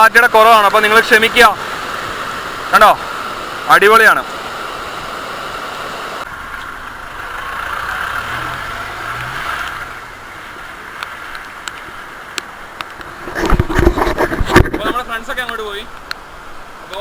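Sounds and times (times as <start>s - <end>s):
waterfall rushing: 0.0s - 13.4s
vehicle engine rising in pitch: 6.4s - 10.4s.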